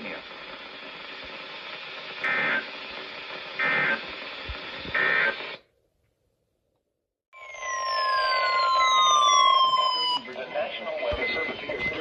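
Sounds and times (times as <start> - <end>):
radio hiss: 0.0 - 5.6, 10.2 - 12.0
raspy digital data bursts: 0.0 - 5.6.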